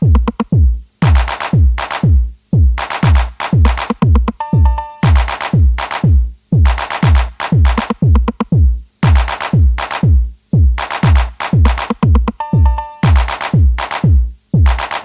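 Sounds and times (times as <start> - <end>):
electronic dance music: 0.0 - 15.0
heavy kick drum: 0.0 - 15.0
sharp percussion hits: 2.8 - 8.4, 10.8 - 15.0.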